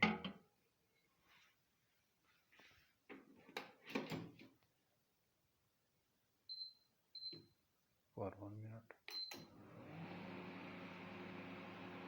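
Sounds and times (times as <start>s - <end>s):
microwave keypad beeps: 6.5s - 7.4s.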